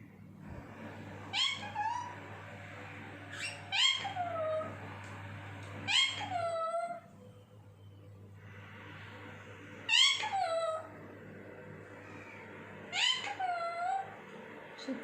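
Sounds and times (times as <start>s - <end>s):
low steady hum: 0.0s - 15.0s
parakeet calls: 1.2s - 7.1s, 8.7s - 11.1s, 11.9s - 14.2s.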